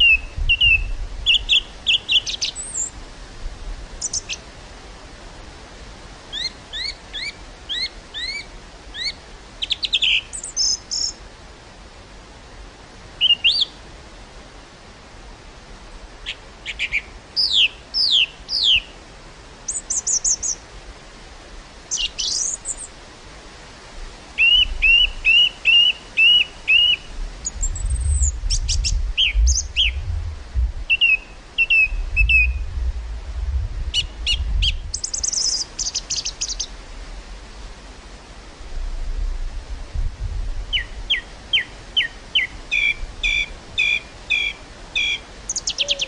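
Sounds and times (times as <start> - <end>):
songbirds singing and calling: 0.0 - 3.0, 4.0 - 4.4, 6.3 - 11.2, 13.2 - 13.8, 16.2 - 19.0, 19.7 - 20.6, 21.9 - 23.0, 24.4 - 30.1, 30.8 - 32.7, 33.9 - 36.8, 40.7 - 46.0
wind rumble on microphone: 0.0 - 6.2, 23.1 - 25.3, 26.6 - 42.0, 42.6 - 44.8
breeze hissing: 0.0 - 46.0.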